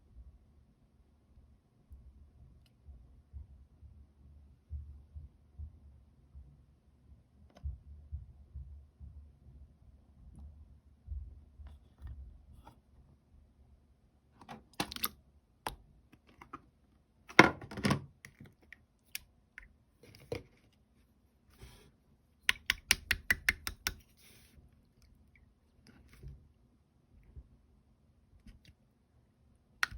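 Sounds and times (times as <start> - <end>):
slime squishing with wet clicks: 18.2 - 19.8, 22.4 - 24.1.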